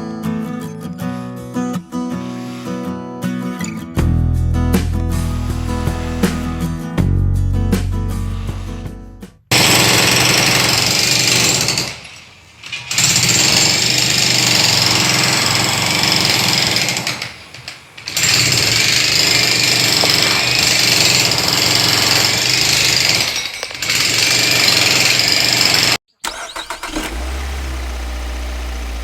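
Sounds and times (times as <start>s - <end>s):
miniature drilling machine hammering: 9.5s - 27.1s.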